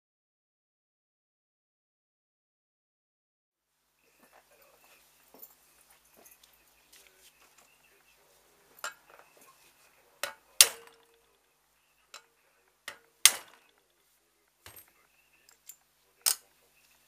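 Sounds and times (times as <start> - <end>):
metal objects clinking: 8.8 - 9.3, 12.2 - 14.0, 14.7 - 16.5.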